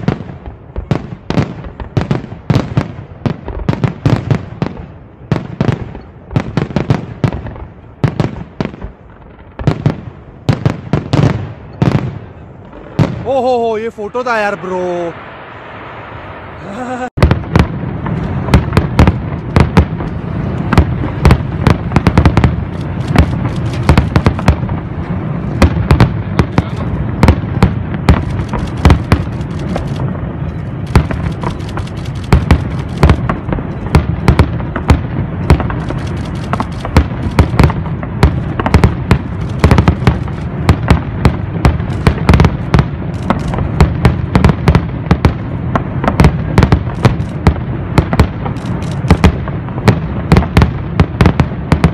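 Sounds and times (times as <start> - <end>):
firecracker bangs and pops: 0.0 - 13.3, 17.2 - 51.9
low rumble of aerial fireworks: 0.0 - 51.9.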